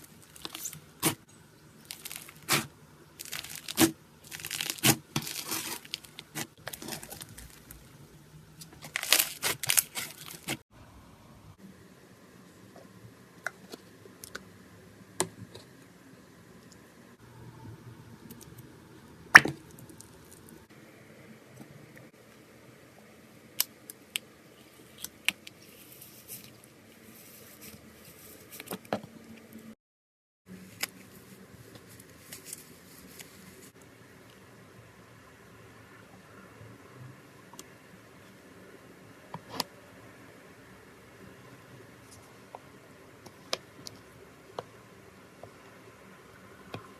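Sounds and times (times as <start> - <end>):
slime crackling and tearing: 1.8 - 7.8, 8.7 - 10.6.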